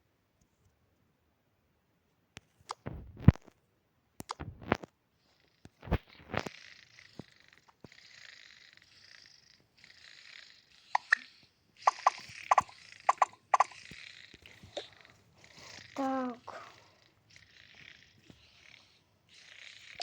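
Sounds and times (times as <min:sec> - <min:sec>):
cat purring: 0:04.5 - 0:20.0
sharp knocks and clicks: 0:11.9 - 0:15.0.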